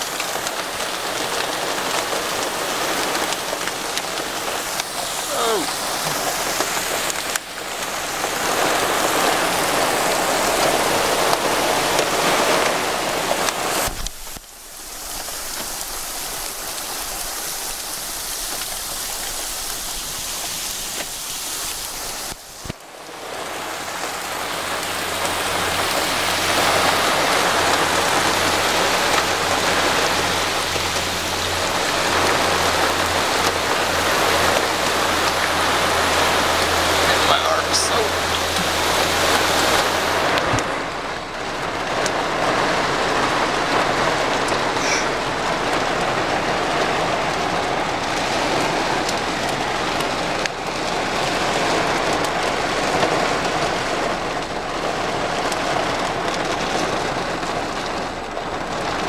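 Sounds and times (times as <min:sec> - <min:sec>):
heavy rain and hail: 0:00.0 - 0:59.0.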